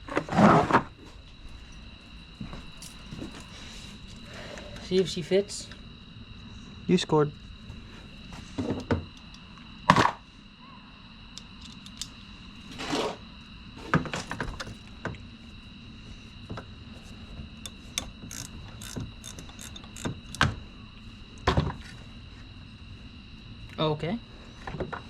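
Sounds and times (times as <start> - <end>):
ratchet clicking on metal housing: 17.6 - 20.4.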